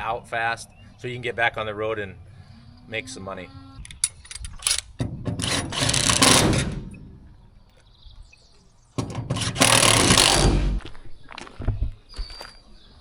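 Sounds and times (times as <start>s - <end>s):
power tool running: 5.4s - 6.9s, 9.2s - 10.8s
clicks and knocks: 9.0s - 10.6s.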